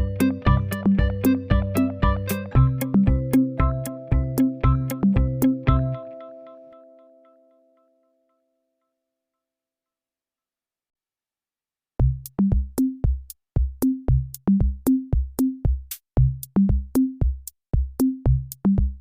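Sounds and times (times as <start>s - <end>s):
drum-machine beat: 0.0s - 6.0s, 12.0s - 19.0s
bouncy bass line: 0.0s - 6.2s, 12.0s - 19.0s.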